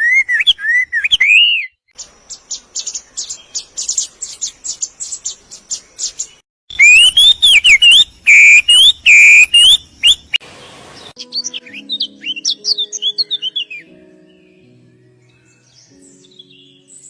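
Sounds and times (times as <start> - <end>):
bird whistled calls: 0.0 - 1.8, 6.7 - 10.4
birds chirping: 0.0 - 17.0.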